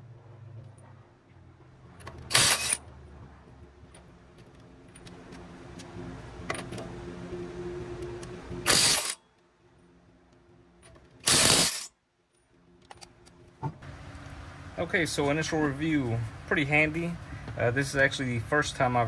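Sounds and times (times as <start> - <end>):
steady mechanical hum: 0.0 - 19.0
impact wrench bursts: 2.2 - 2.8, 8.6 - 9.2, 11.2 - 11.9.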